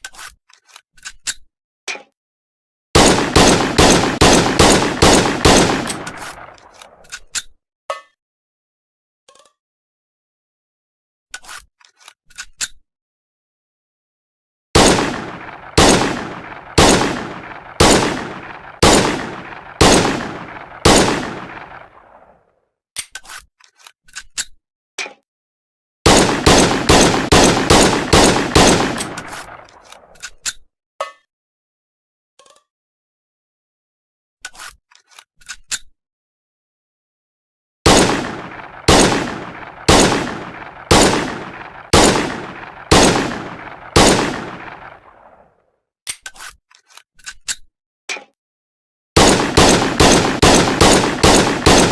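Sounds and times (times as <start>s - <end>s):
pistol shots: 3.0s - 6.7s, 14.8s - 22.3s, 26.1s - 30.1s, 37.9s - 45.4s, 49.2s - 51.9s.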